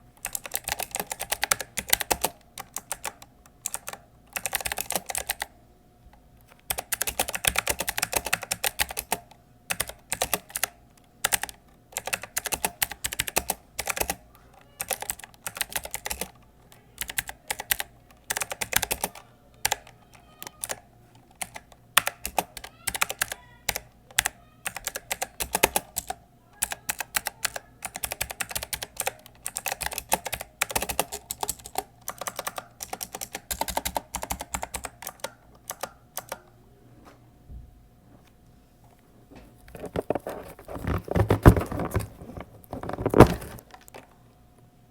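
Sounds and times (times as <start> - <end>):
mechanical keyboard clicking: 0.2 - 5.5, 6.6 - 14.2, 14.8 - 16.4, 17.0 - 20.8, 21.4 - 36.5.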